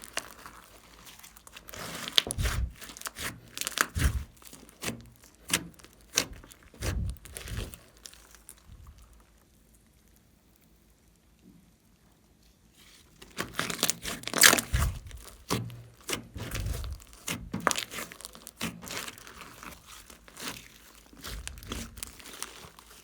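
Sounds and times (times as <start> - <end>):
slime popping and crackling: 0.0 - 10.2, 13.0 - 23.0
low squelching thuds: 1.7 - 7.9, 13.4 - 22.7.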